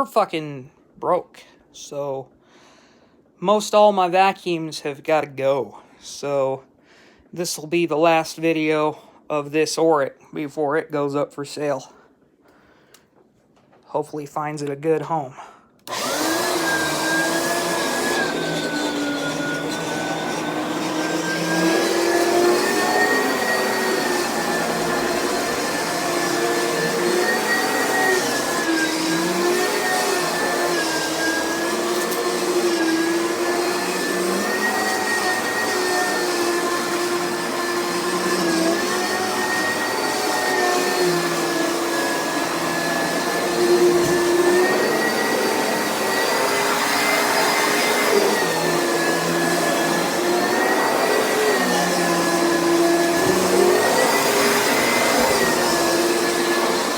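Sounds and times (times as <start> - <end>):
vacuum cleaner motor whine: 15.9 - 56.9.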